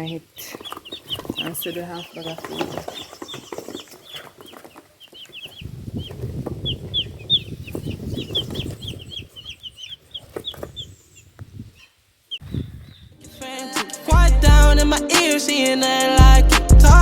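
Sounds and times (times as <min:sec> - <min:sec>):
low rustling: 0:00.0 - 0:13.4
chicks peeping: 0:00.0 - 0:15.0.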